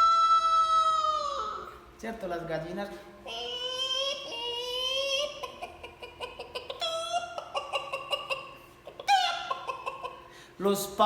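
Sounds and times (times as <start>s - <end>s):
person imitating hen clucking: 3.3s - 10.2s.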